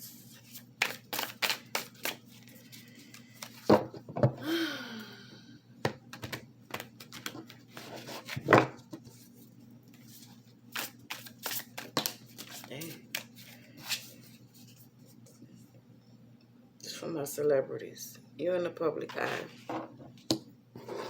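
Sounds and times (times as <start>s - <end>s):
cards being shuffled: 0.4s - 3.7s, 9.9s - 14.8s.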